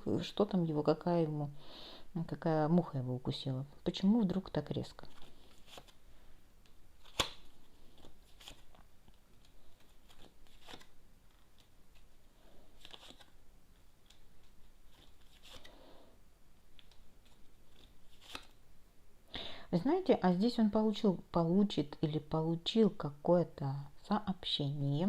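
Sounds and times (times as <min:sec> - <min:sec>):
cards clicking: 0:07.0 - 0:12.1, 0:17.7 - 0:18.5
card stock rustling: 0:07.0 - 0:13.4.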